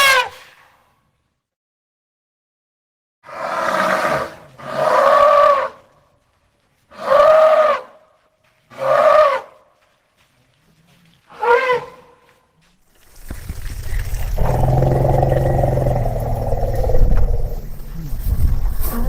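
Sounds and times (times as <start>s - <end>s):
elephant calling: 14.3s - 18.2s.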